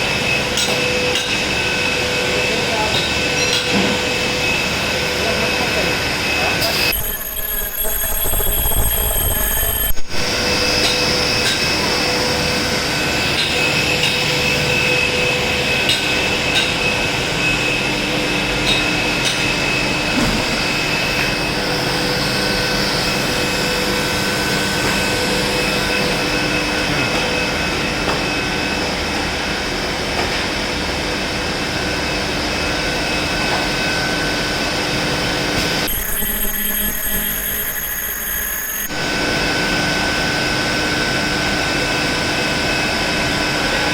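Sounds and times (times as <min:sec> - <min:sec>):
machinery running: 0:00.0 - 0:43.9.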